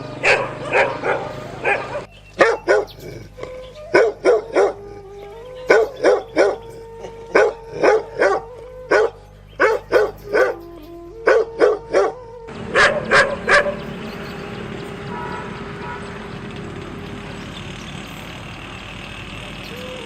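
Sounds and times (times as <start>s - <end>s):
dog barking: 0.2s - 3.2s, 3.9s - 4.8s, 5.7s - 6.7s, 7.3s - 10.6s, 11.3s - 13.8s, 15.1s - 16.1s.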